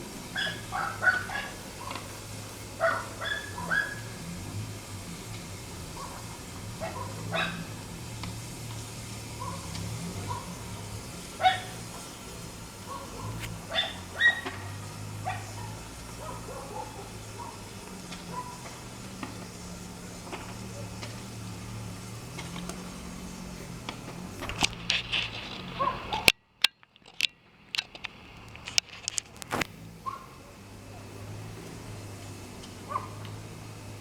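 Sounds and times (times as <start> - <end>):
dog barking: 0.2 - 8.2, 9.2 - 19.4, 25.8 - 26.3, 30.0 - 30.6, 32.8 - 33.4.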